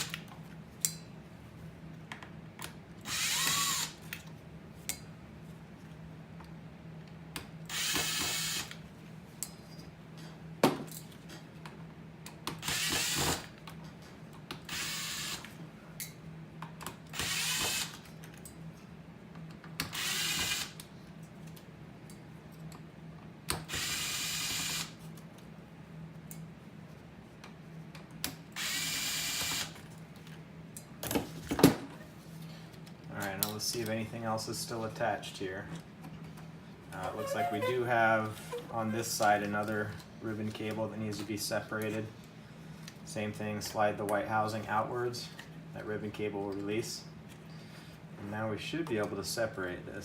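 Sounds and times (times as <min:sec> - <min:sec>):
electric screwdriver running: 0:03.1 - 0:04.0, 0:07.7 - 0:08.8, 0:12.6 - 0:13.5, 0:17.2 - 0:18.0, 0:20.0 - 0:20.8.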